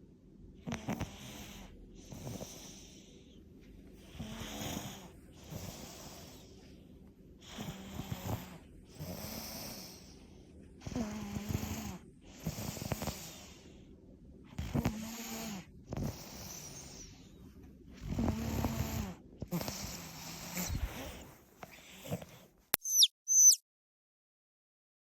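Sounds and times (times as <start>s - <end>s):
toddler snoring heavily: 0.7s - 3.2s, 4.0s - 6.5s, 7.4s - 10.2s, 10.8s - 13.7s, 14.6s - 17.2s, 18.0s - 22.4s.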